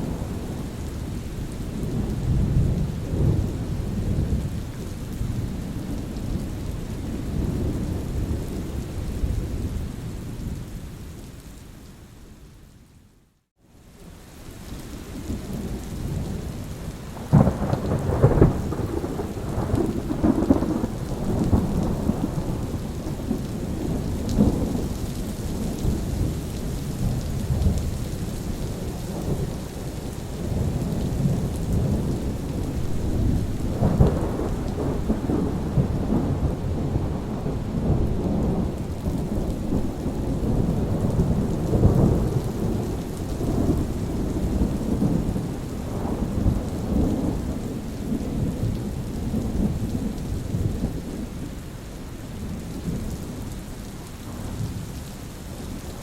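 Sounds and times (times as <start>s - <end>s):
steady rain: 0.0s - 56.0s
rolling thunder: 17.2s - 51.4s
sharp thunder cracks: 30.6s - 47.5s.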